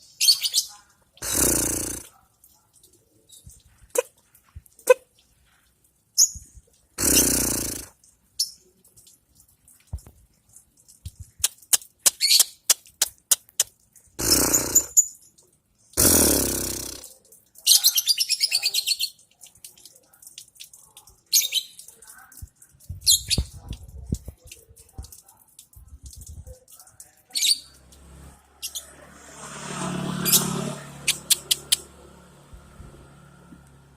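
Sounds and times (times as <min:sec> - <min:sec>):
lovebird chirps and squawks: 0:00.2 - 0:02.1, 0:07.0 - 0:08.6, 0:12.0 - 0:12.8, 0:14.2 - 0:15.2, 0:30.2 - 0:31.9
bird chattering trill: 0:07.0 - 0:07.9, 0:14.2 - 0:15.0, 0:30.3 - 0:31.8.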